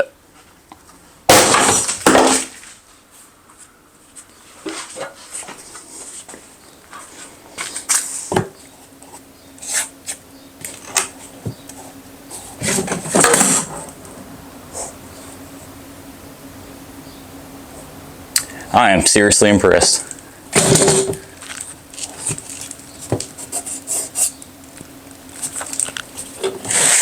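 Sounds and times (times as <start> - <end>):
toolbox crashing: 1.3 - 2.6, 12.7 - 13.7, 20.6 - 21.3.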